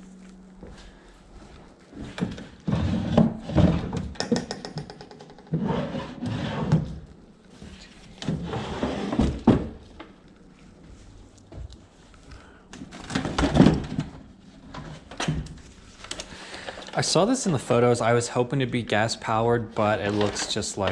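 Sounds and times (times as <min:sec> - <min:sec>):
heavy items scraping and rattling: 0:01.8 - 0:04.2, 0:05.5 - 0:10.0, 0:19.6 - 0:20.9.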